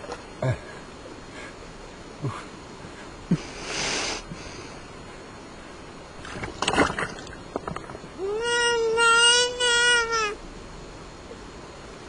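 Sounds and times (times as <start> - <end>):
shallow river water running: 4.2 - 9.0
knocks and splashes: 6.2 - 8.1.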